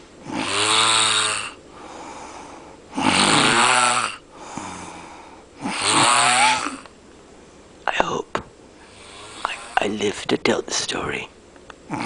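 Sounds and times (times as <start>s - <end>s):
man snoring loudly: 0.2s - 1.6s, 2.9s - 5.0s, 5.6s - 6.9s, 9.0s - 9.8s
quiet breaths: 1.7s - 3.0s, 4.3s - 5.6s, 8.8s - 9.9s.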